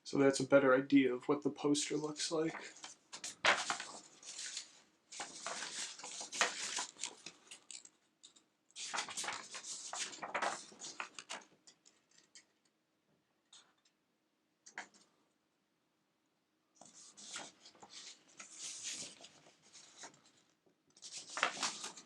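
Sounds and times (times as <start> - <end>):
paper and card rustling: 1.7 - 12.6, 16.8 - 22.0.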